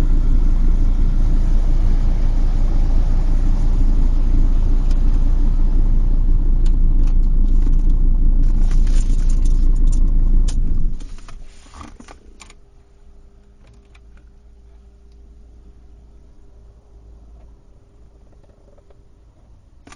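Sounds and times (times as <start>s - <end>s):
loud low rumble: 0.0s - 11.0s
faint hum: 0.0s - 19.9s.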